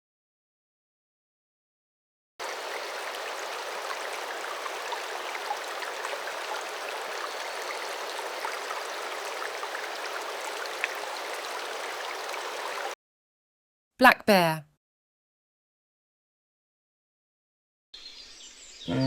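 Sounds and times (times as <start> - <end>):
small splashes and drips: 2.4 - 13.0
stream water rushing: 2.4 - 13.0.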